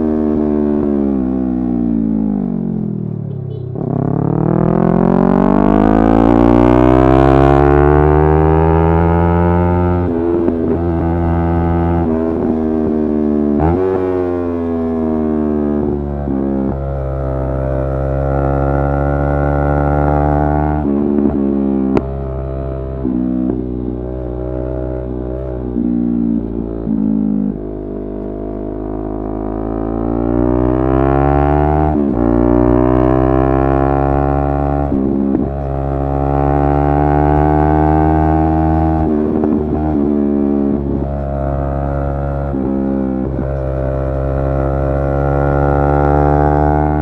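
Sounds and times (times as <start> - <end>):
motorcycle engine accelerating: 0.0 - 47.0.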